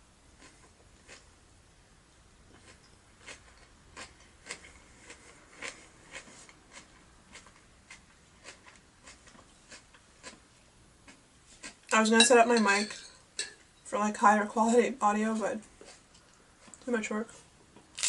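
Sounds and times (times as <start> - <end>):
person chewing crunchy food: 0.4 - 1.3, 2.5 - 11.9, 15.8 - 16.8.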